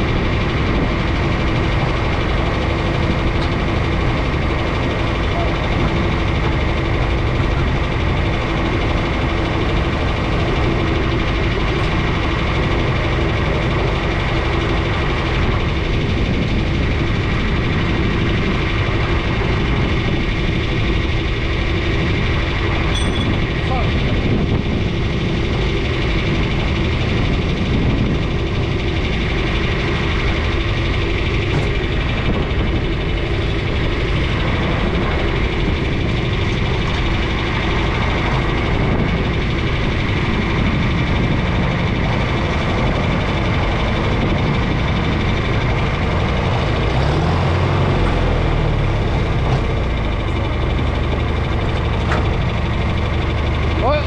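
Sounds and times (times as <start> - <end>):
deep low rumble: 0.0 - 54.0
engine running: 0.0 - 54.0.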